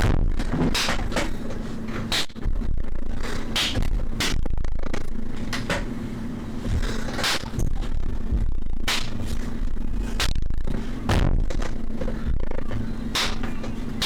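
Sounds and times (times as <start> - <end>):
deep electronic bass: 0.0 - 0.8, 2.3 - 14.0
noisy percussive hits: 10.2 - 11.8.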